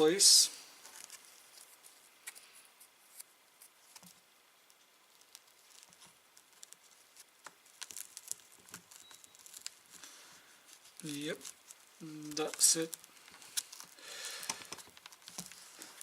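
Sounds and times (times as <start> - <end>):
handling clicks and rustles: 5.2 - 16.0.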